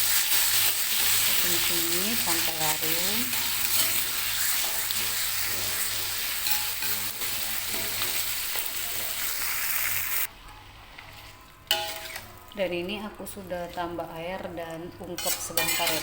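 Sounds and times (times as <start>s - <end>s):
onions sizzling in hot oil: 0.0s - 10.3s, 15.2s - 16.0s.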